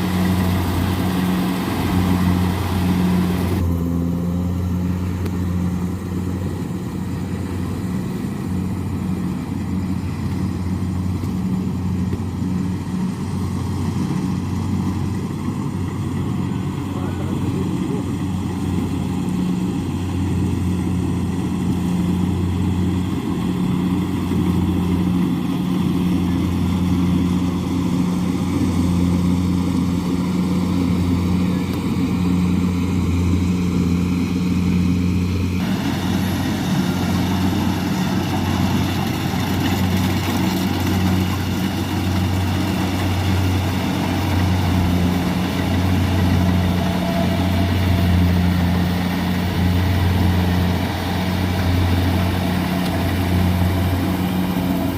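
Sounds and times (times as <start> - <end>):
diesel engine humming: 0.0 - 54.9
high-pitched machine noise: 35.6 - 54.9.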